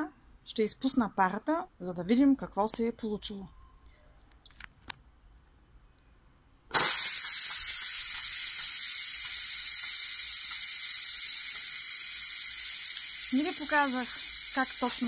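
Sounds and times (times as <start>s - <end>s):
steam hissing from pressure valve: 6.7s - 15.0s.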